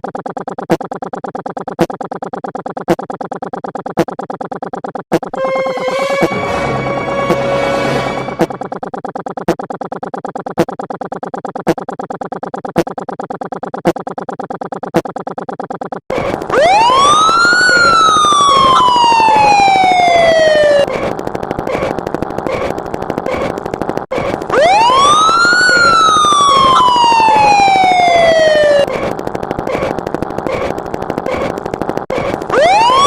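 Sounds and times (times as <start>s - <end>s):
fast steady pulsing: 0.0s - 5.4s, 6.2s - 33.0s
siren wailing: 5.3s - 8.8s, 16.2s - 21.1s, 24.5s - 29.1s, 32.5s - 33.0s.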